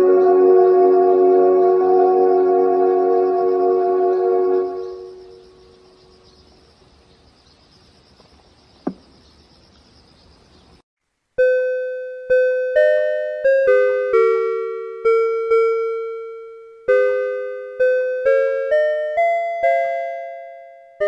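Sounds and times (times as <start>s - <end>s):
faint outdoor hiss: 0.0s - 15.2s.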